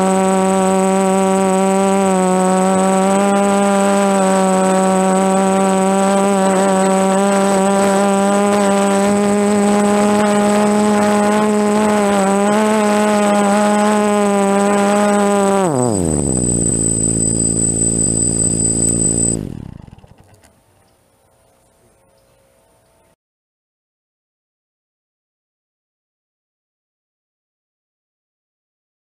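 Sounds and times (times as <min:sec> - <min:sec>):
drone motors whining: 0:00.0 - 0:20.5.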